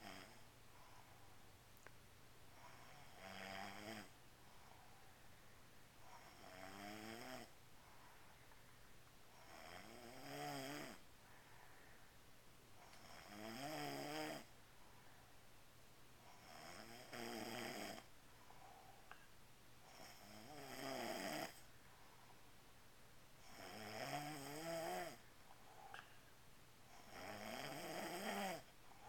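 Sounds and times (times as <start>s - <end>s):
slow snoring: 0.0s - 0.5s, 2.5s - 4.8s, 6.0s - 7.6s, 9.3s - 11.1s, 12.8s - 14.5s, 16.2s - 18.1s, 19.8s - 21.7s, 23.4s - 26.2s, 26.9s - 29.0s
quiet breathing: 0.0s - 29.0s.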